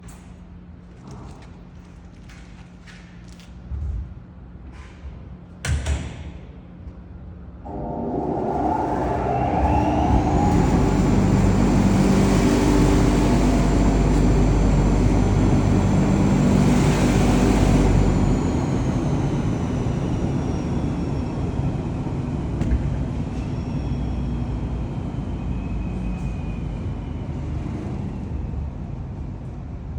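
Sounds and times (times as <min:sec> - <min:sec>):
high fan whine: 0:00.0 - 0:29.9
rush of air from blowers: 0:07.7 - 0:28.5.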